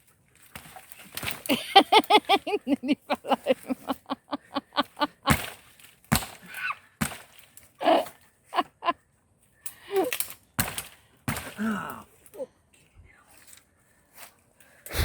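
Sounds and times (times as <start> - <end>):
dry branches snapping: 0.3 - 2.1, 5.2 - 8.3, 9.6 - 12.3.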